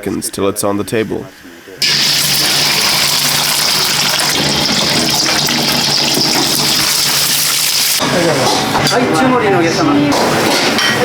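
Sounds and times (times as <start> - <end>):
water running from a tap: 1.8 - 8.0.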